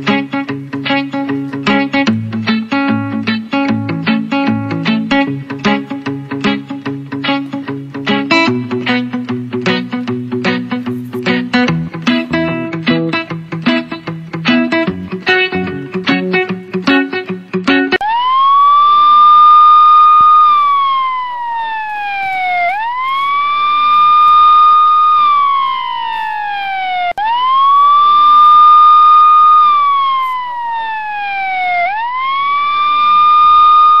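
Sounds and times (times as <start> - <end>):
guitar tune: 0.0 - 34.0
wailing siren: 18.0 - 34.0.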